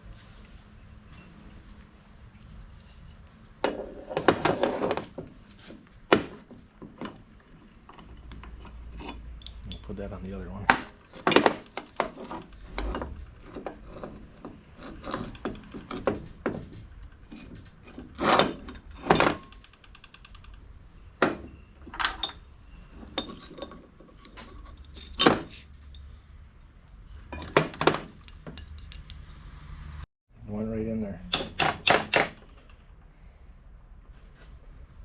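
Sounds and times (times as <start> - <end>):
metal parts and tools clinking: 3.6 - 26.3, 27.1 - 29.4.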